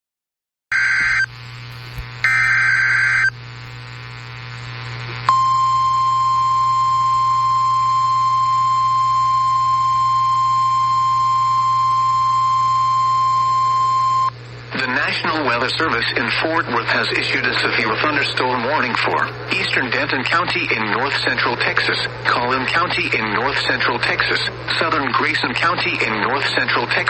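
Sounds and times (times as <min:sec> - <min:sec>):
steady warning alarm tone: 0:00.7 - 0:04.1
buzzy digital data bursts: 0:00.8 - 0:05.1
low hum and hiss: 0:01.1 - 0:27.0.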